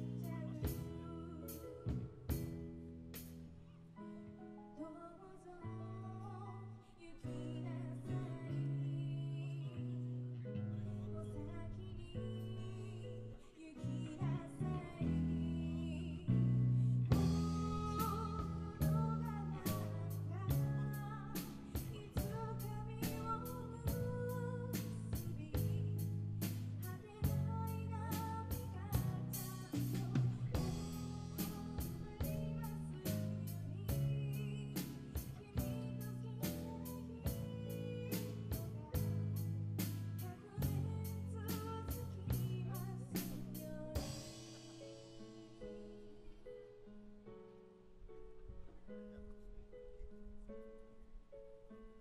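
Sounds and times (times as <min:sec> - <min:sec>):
drum kit beat: 0:00.0 - 0:03.4, 0:17.1 - 0:45.9
live rock band playing: 0:17.1 - 0:45.5.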